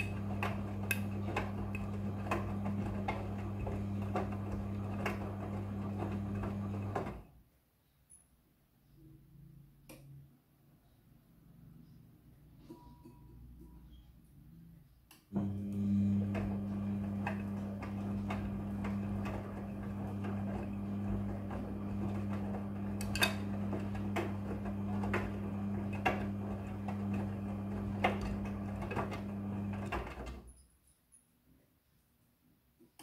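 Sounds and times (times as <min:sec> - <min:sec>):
washing machine humming: 0:00.0 - 0:07.2, 0:15.3 - 0:30.5.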